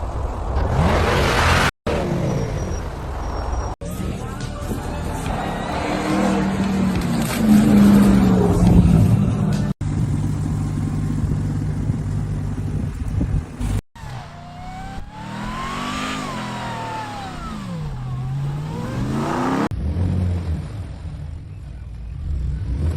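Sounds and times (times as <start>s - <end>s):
engine revving: 5.1s - 20.7s.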